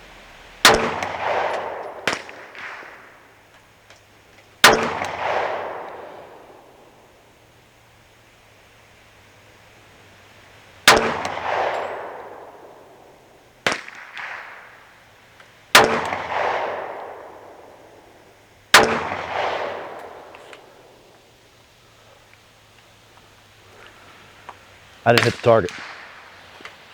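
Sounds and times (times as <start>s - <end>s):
pistol shots with echo: 0.6s - 3.5s, 4.6s - 7.2s, 10.8s - 15.0s, 15.7s - 21.1s, 25.1s - 26.3s.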